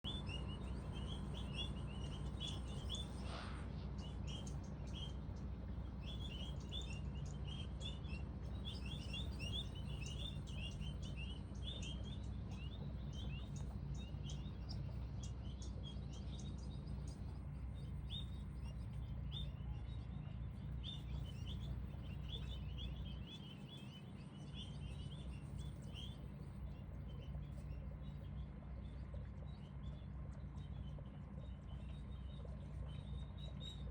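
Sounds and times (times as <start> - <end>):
low steady rumble: 0.0 - 33.9
small birds chirping: 0.0 - 33.9.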